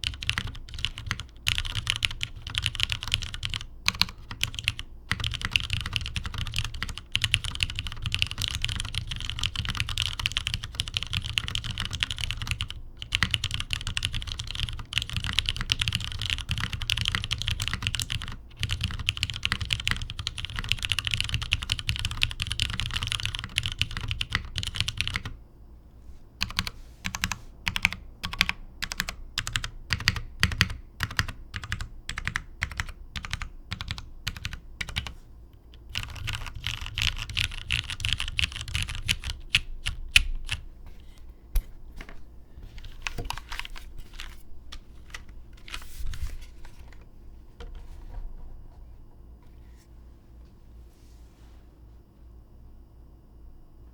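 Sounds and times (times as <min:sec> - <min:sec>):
mechanical keyboard typing: 0:00.0 - 0:25.4, 0:26.4 - 0:40.7, 0:42.8 - 0:45.8.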